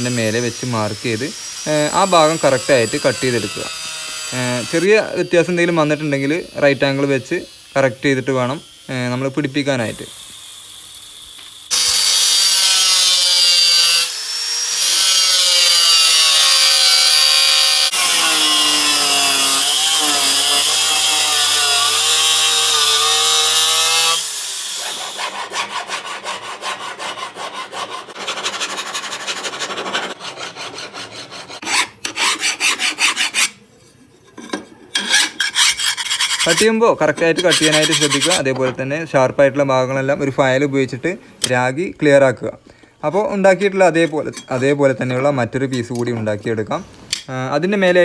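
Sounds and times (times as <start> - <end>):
file rasping on steel: 11.7 - 38.5.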